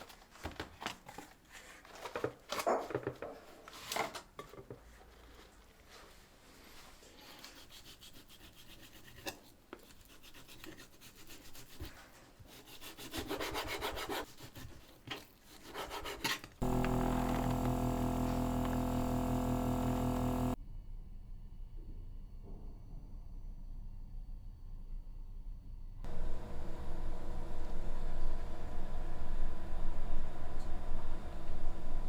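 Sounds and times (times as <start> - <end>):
kitchen appliance motor humming: 15.8 - 20.6, 26.1 - 29.2.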